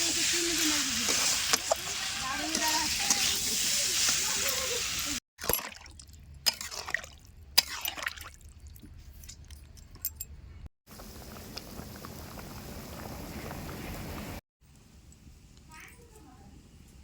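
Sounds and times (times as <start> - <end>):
liquid pouring and splashing: 5.4 - 9.7.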